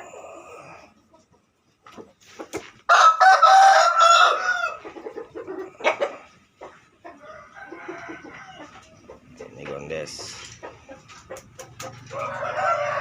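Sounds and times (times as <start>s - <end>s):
rooster crowing: 2.9s - 4.8s, 7.2s - 8.9s, 12.0s - 13.0s.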